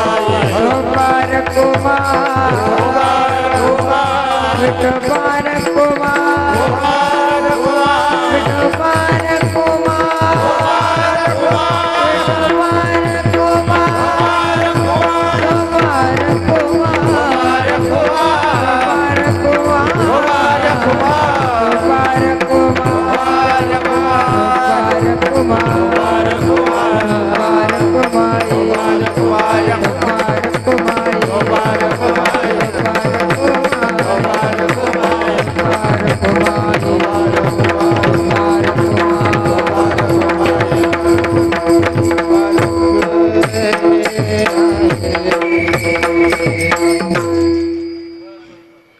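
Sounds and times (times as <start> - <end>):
fast hand-drum rhythm: 0.0 - 47.7
wavering melody: 44.6 - 48.9.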